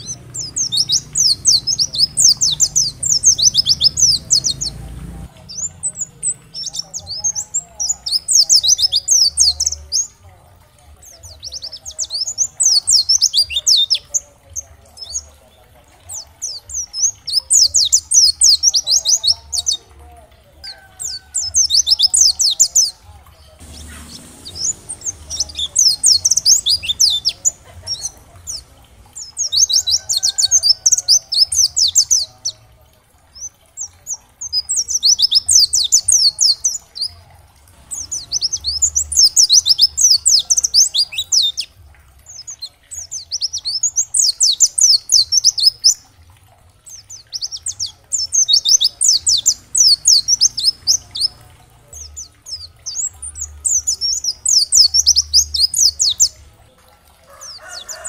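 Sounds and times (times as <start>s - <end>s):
bird twittering: 0.0s - 10.2s, 23.6s - 32.5s, 47.0s - 51.5s.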